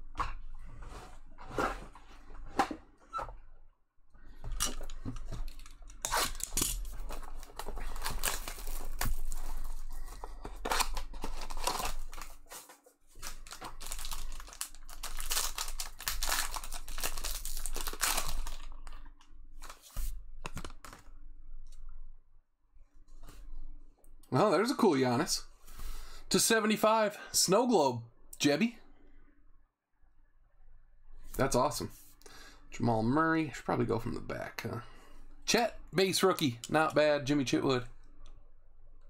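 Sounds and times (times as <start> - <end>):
wrappers tearing and crinkling: 5.5 - 19.0.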